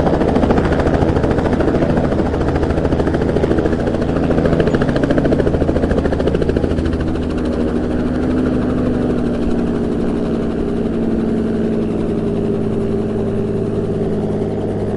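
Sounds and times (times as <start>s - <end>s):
helicopter rotor and engine: 0.0s - 14.9s.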